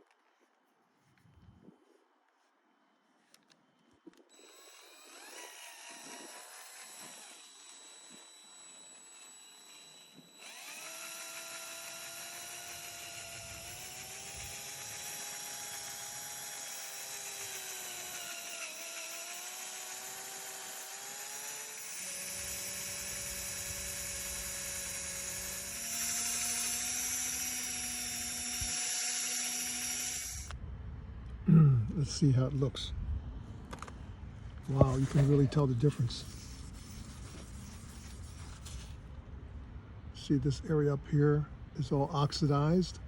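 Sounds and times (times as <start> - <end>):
power drill motor whine: 4.3 - 30.6.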